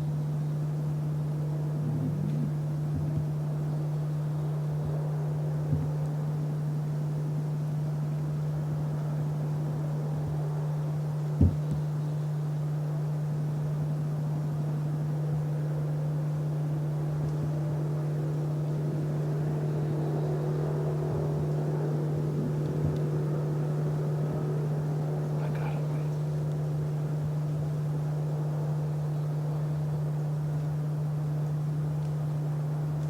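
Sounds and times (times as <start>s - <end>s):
steady low hum: 0.0s - 33.0s
faint higher tones: 1.5s - 3.9s.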